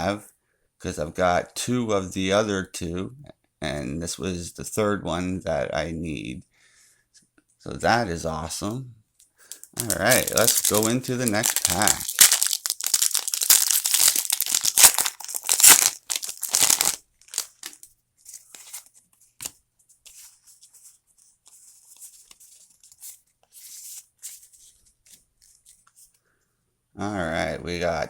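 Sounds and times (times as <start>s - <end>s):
foil wrapper tearing and crinkling: 9.5s - 19.5s
wrapper and cards rustling: 9.5s - 26.2s.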